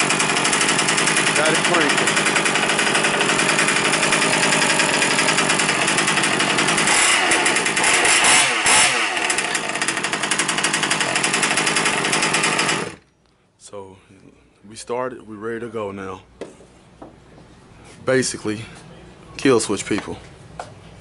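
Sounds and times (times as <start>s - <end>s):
engine revving: 0.0s - 13.0s
two-stroke engine running: 0.0s - 13.0s.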